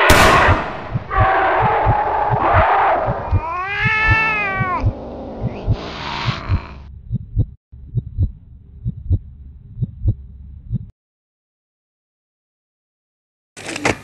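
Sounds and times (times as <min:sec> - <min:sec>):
low regular thumps: 0:00.1 - 0:10.9
cat hissing and yowling: 0:03.1 - 0:06.8.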